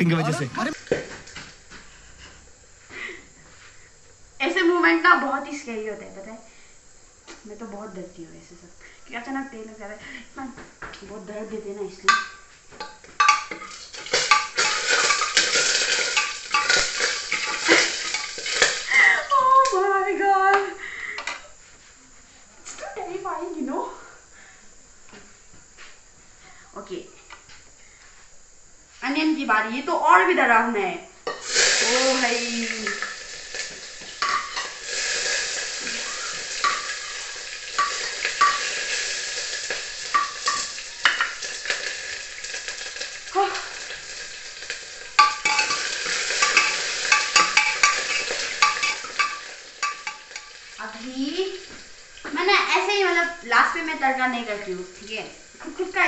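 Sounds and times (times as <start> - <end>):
oil sizzling in a pan: 11.2 - 21.5, 31.2 - 56.0
metal spoon clinking on pan: 45.2 - 50.6.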